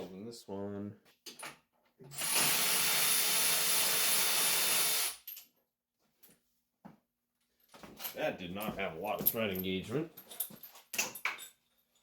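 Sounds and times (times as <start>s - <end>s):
cordless power tool spinning nut: 2.1s - 5.2s.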